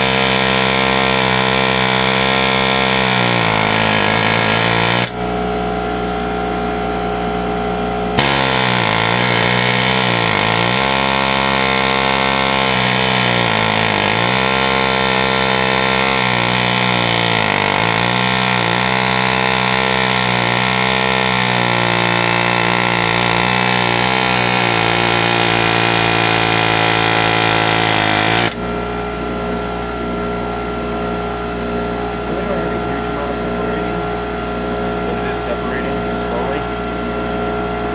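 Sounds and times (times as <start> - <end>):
pneumatic air hammer hammering: 0.0 - 5.4, 8.1 - 31.2.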